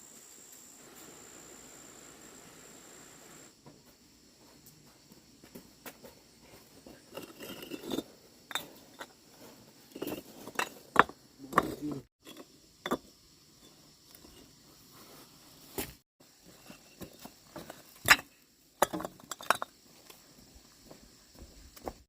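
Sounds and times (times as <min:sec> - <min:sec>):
objects knocking and scraping: 0:06.4 - 0:14.6, 0:15.7 - 0:19.8.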